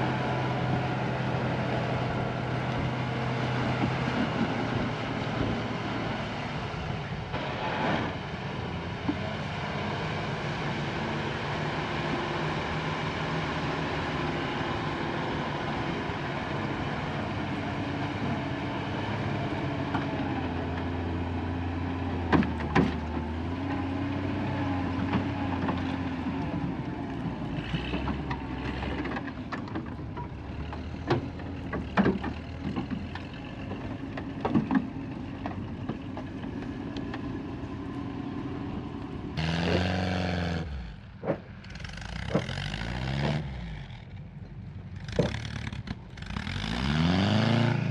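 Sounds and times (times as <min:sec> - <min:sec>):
snow vehicle engine running: 0:00.0 - 0:47.9
sharp knocks and clanks: 0:27.8 - 0:36.4, 0:45.1 - 0:46.0.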